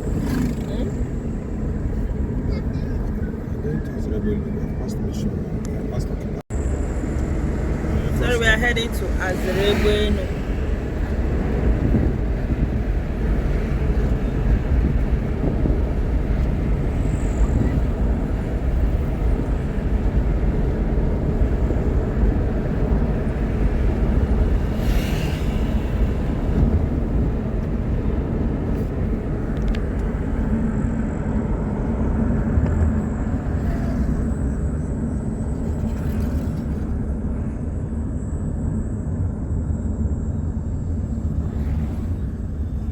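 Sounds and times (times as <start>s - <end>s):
vehicle engine and road noise: 0.0s - 42.9s.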